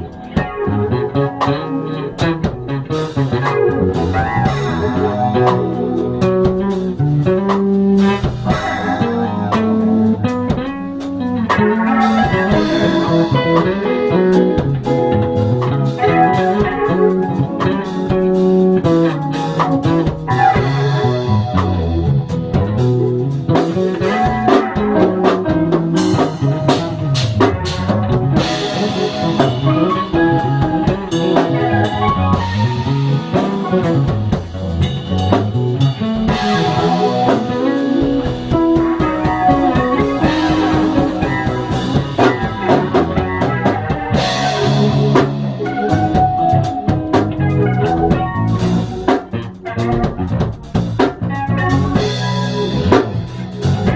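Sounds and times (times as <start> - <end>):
bass guitar solo: 0.0 - 53.9
drum kit: 0.0 - 53.9.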